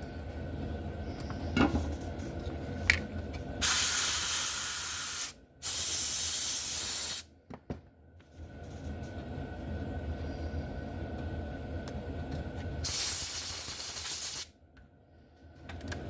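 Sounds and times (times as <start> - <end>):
aerosol can spraying: 3.6 - 7.2, 12.8 - 14.5.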